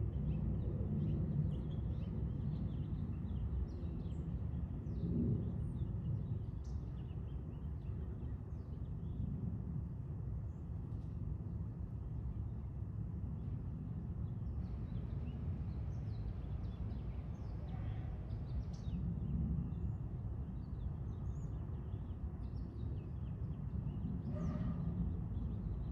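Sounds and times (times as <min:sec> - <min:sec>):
distant jet engines rumbling: 0:13.3 - 0:25.9.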